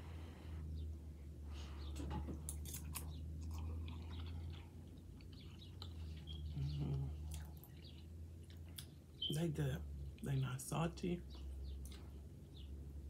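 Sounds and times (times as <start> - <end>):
person chewing noodles: 2.5 - 9.0.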